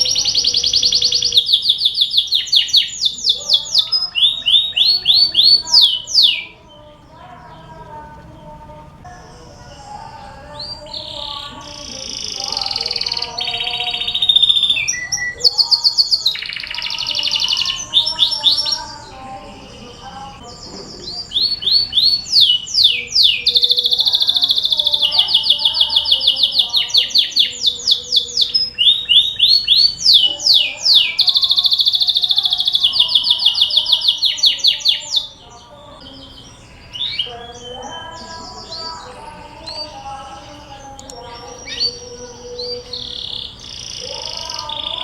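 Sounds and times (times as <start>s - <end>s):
canary singing trills: 0.0s - 45.0s.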